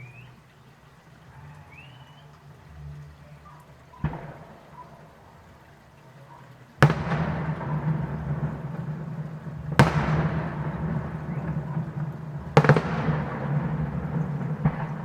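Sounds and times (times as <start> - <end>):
aerial fireworks exploding: 6.8 - 15.0.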